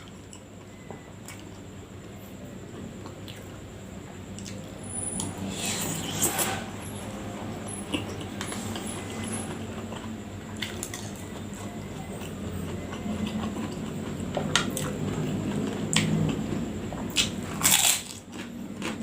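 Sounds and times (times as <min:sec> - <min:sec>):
person chewing food: 0:03.0 - 0:03.6, 0:04.3 - 0:04.8, 0:07.9 - 0:08.9, 0:09.5 - 0:19.0.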